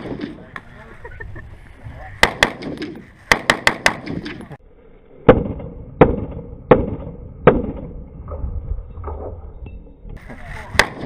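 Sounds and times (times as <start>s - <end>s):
rapid gunshots: 2.2s - 4.3s, 10.7s - 11.0s.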